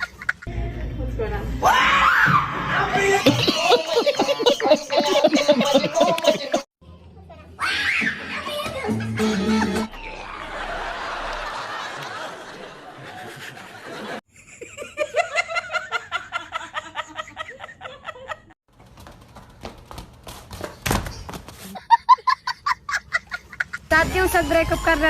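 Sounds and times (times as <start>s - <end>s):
rhythmic laughter: 3.0s - 6.7s, 8.8s - 18.6s.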